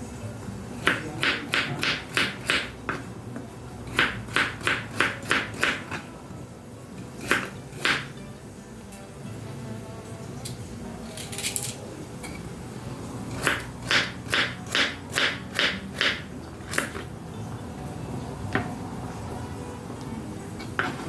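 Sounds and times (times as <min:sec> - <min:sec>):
knife chopping on cutting board: 0:00.8 - 0:03.1, 0:03.9 - 0:06.0, 0:07.2 - 0:08.1, 0:13.4 - 0:17.1, 0:20.7 - 0:21.0.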